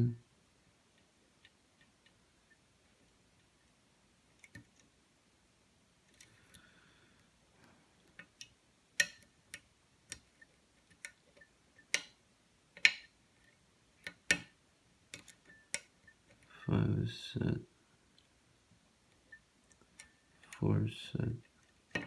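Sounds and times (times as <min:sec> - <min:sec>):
lock pick clicking: 0:08.2 - 0:10.3, 0:15.1 - 0:15.9.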